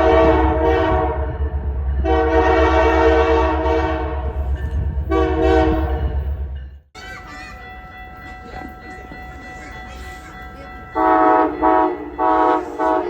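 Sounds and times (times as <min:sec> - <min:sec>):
locomotive air horn blasts: 0:00.0 - 0:01.3, 0:02.0 - 0:04.3, 0:05.1 - 0:06.0, 0:11.0 - 0:13.0
passing train rumble: 0:00.0 - 0:13.0.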